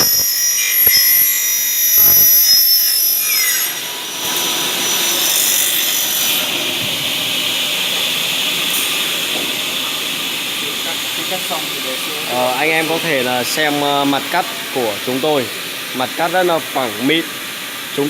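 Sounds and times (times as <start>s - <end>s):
saw hissing: 0.0s - 6.5s
saw screeching through metal: 0.0s - 6.5s.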